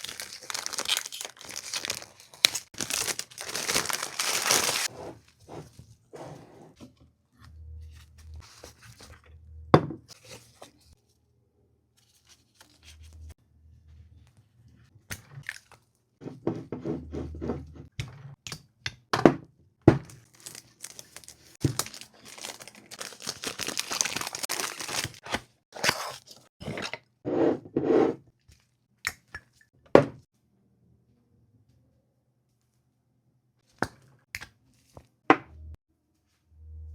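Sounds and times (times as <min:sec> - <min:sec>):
packaging rustling: 0:00.0 - 0:04.9, 0:20.2 - 0:25.4.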